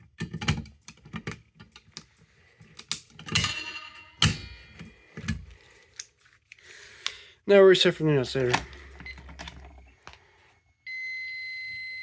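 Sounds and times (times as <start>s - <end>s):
clicks and knocks of hard equipment: 0.1s - 6.2s, 8.4s - 10.2s
metallic clatters: 2.8s - 5.6s.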